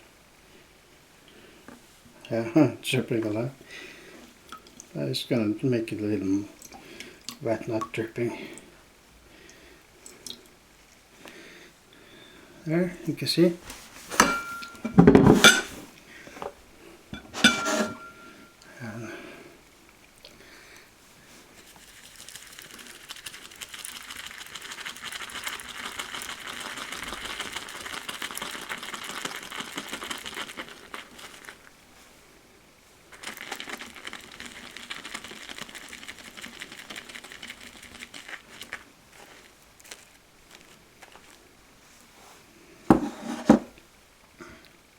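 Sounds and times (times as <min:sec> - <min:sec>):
shaving brush lathering in a mug: 0:14.1 - 0:15.6, 0:21.6 - 0:31.7, 0:33.1 - 0:41.4.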